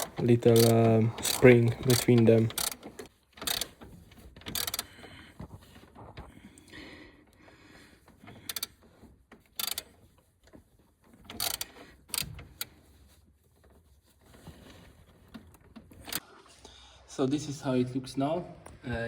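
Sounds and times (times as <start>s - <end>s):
metal tools clinking and scraping: 0.0s - 4.8s.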